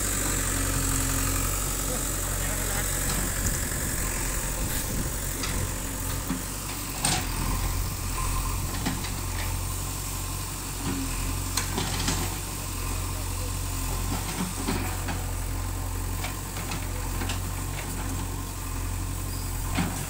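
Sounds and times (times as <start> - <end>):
diesel engine humming: 0.0 - 20.0.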